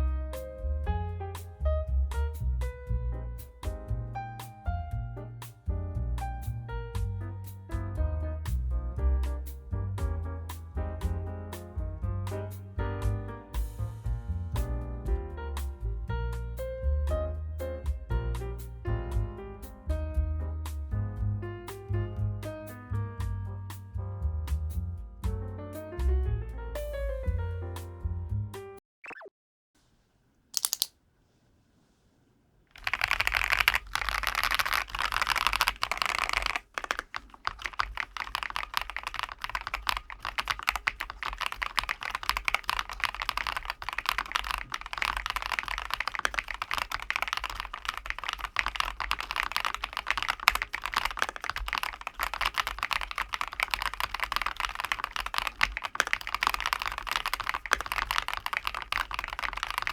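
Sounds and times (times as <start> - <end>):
mechanical keyboard typing: 30.6 - 30.9, 32.7 - 59.9.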